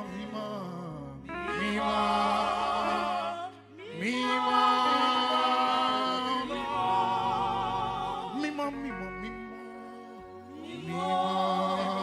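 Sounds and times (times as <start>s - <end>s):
choir singing a cappella: 0.0s - 12.0s.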